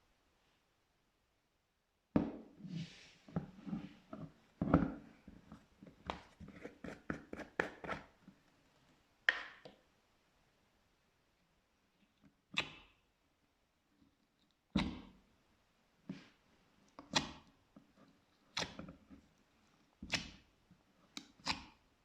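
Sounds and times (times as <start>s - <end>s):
slime squishing with wet pops: 21.1s - 21.8s.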